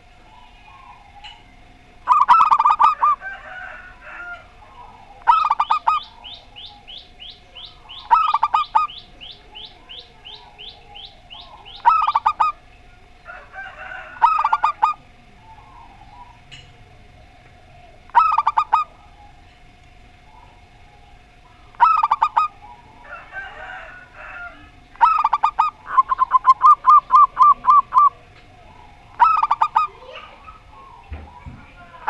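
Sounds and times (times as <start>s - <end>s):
doves cooing: 0.0s - 32.0s
high falling bird chirp: 4.8s - 12.6s.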